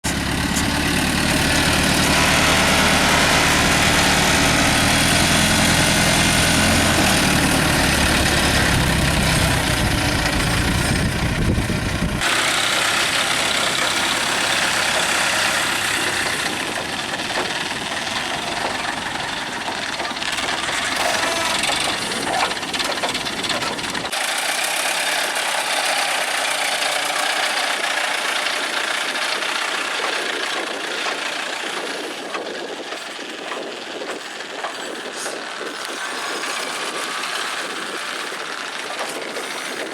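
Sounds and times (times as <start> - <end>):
diesel engine running: 0.0 - 39.9
high mechanical noise: 0.0 - 39.9.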